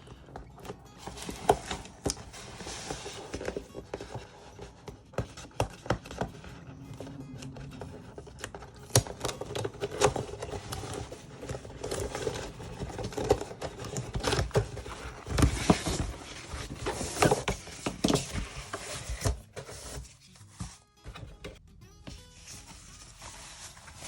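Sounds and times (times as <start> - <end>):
cardboard and plastic rustling: 0.0 - 24.0.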